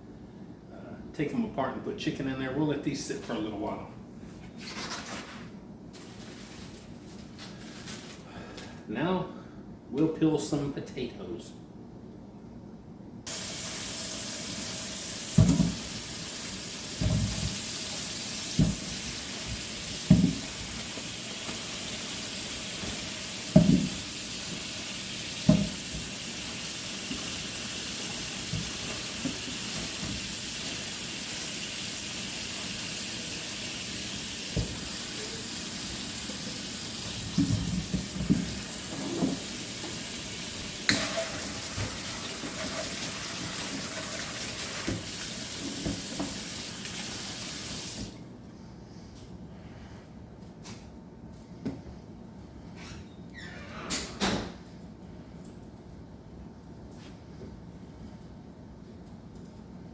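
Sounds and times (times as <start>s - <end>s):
tap water running into sink: 13.3s - 48.2s
knocks and thumps: 15.4s - 15.8s, 20.1s - 20.5s, 23.6s - 24.0s.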